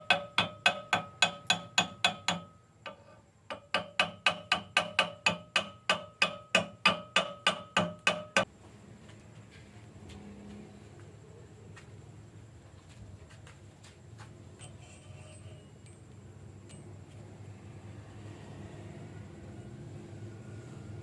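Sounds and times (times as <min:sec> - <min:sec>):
hammer striking steel: 0:00.0 - 0:08.5.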